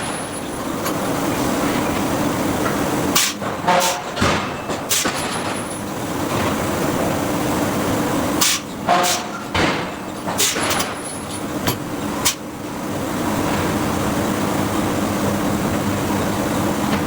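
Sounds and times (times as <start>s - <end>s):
machinery hum: 0.0s - 17.0s
forging hammer striking steel: 8.4s - 11.3s.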